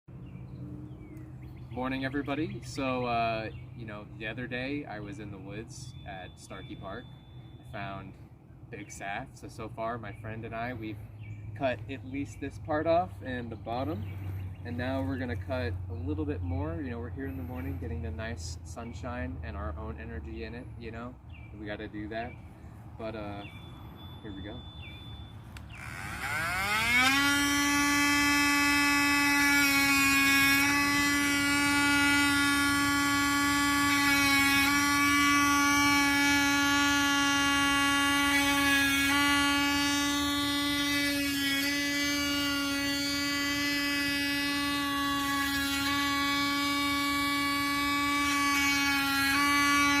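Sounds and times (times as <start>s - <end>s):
power tool motor cutting wood: 25.5s - 50.0s.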